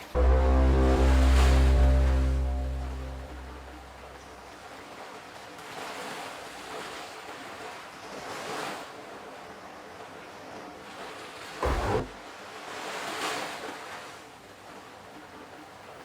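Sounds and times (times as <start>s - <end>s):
low sustained musical tone: 0.0s - 5.1s
water washing in gentle swells: 0.0s - 16.0s.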